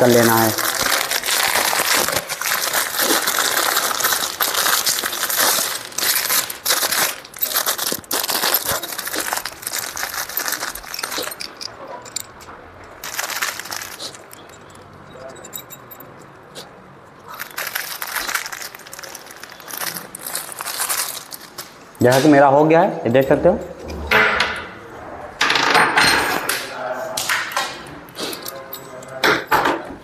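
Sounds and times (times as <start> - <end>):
crinkling and rustling handling noise: 0.0 - 24.0.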